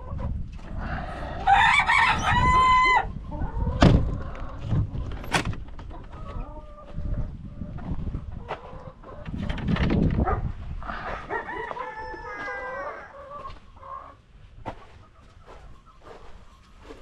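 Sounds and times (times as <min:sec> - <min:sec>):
chickens clucking: 0:00.0 - 0:17.0
rooster crowing: 0:00.8 - 0:03.1, 0:11.1 - 0:13.2.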